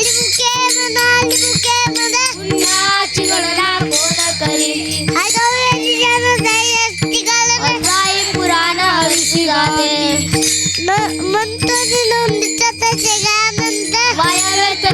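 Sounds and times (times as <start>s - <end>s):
boy singing: 0.0s - 14.9s
small cymbals striking: 0.0s - 14.9s
drone notes: 2.4s - 14.9s.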